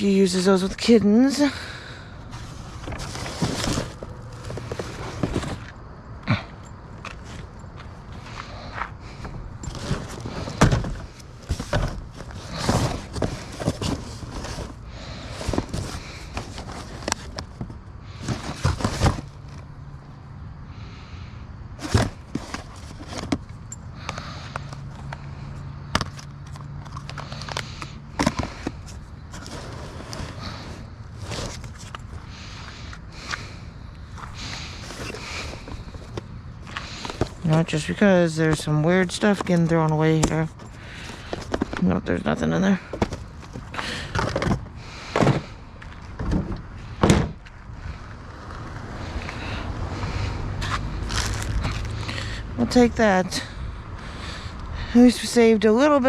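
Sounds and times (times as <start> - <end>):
trash knocks and clatter: 2.3 - 19.6, 21.8 - 25.2, 42.7 - 47.6.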